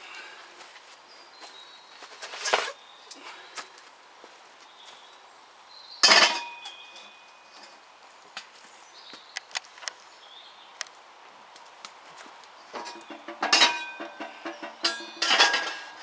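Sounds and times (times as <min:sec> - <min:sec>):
metal cookware clanking: 0:06.0 - 0:06.8, 0:12.8 - 0:16.0
light metallic clinks: 0:12.8 - 0:16.0.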